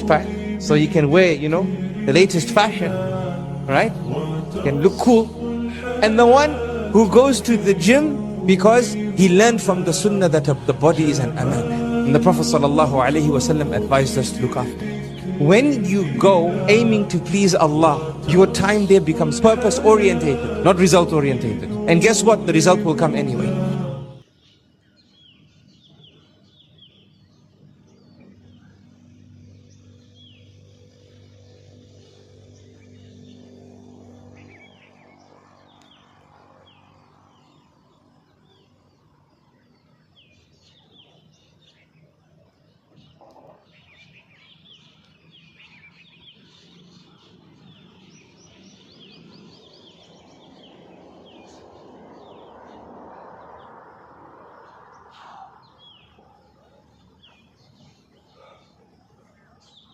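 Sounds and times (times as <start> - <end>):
small birds chirping: 2.2 - 8.1, 24.2 - 59.9
soft rushing noise: 48.3 - 58.3.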